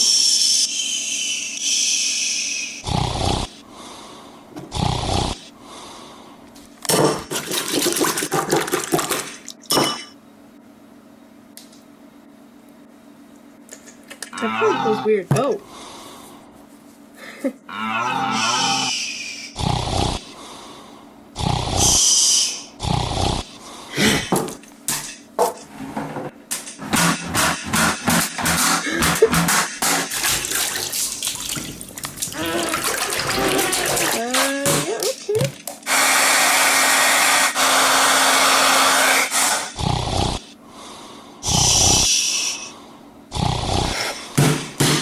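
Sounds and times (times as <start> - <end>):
short loud snores: 2.8 - 3.6, 4.7 - 5.5, 19.6 - 20.2, 21.4 - 24.3, 39.5 - 40.5, 41.4 - 42.3, 43.3 - 44.2
person snoring loudly: 2.8 - 6.0, 14.4 - 15.1, 17.7 - 20.6, 21.4 - 24.3, 31.6 - 34.9, 39.6 - 42.7, 43.3 - 44.4.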